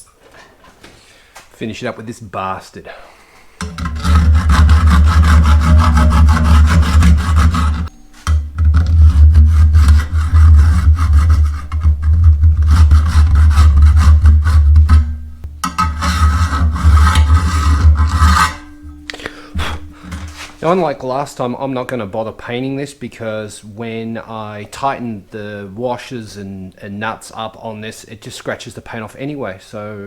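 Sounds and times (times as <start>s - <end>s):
power tool rasping on metal: 3.6s - 20.8s.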